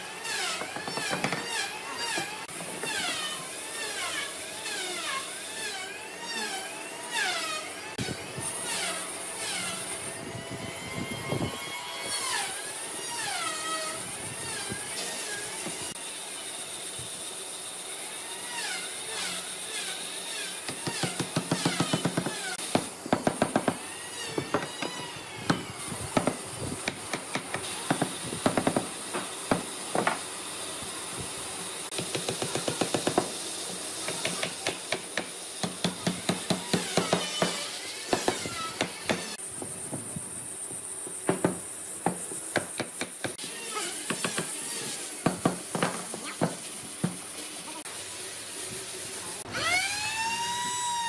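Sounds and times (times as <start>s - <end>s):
steady hiss: 19.5s - 49.5s.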